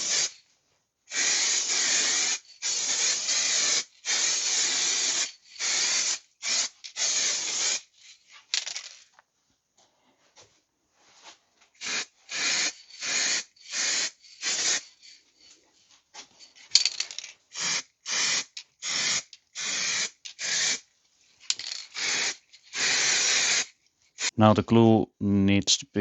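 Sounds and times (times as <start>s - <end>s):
aerosol spray bursts: 0.0s - 0.4s, 1.1s - 7.9s, 11.8s - 14.9s, 17.5s - 20.8s, 21.9s - 24.3s.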